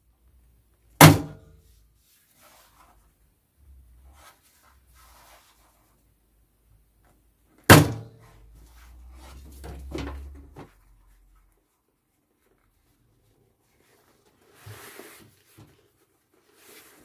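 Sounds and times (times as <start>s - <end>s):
loud thunk: 7.7s - 8.1s.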